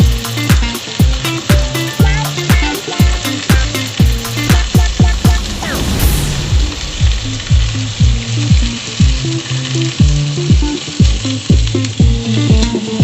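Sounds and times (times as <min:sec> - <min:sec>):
background music with a beat: 0:00.0 - 0:05.4, 0:08.0 - 0:13.0
food sizzling in a hot pan: 0:00.0 - 0:13.0.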